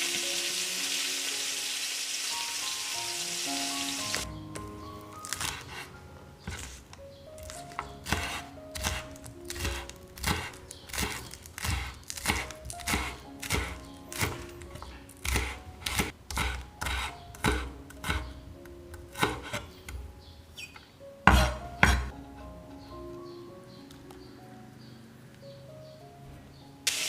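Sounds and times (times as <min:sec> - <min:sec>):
background music: 0:00.0 - 0:27.0
knife chopping on cutting board: 0:05.3 - 0:06.8, 0:07.4 - 0:18.3, 0:19.2 - 0:20.0, 0:21.3 - 0:22.1.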